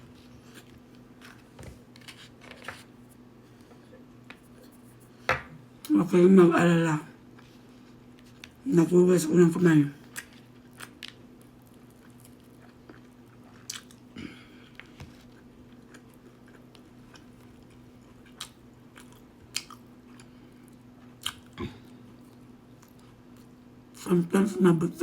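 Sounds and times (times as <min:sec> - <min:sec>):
person chewing food: 0:10.0 - 0:23.5.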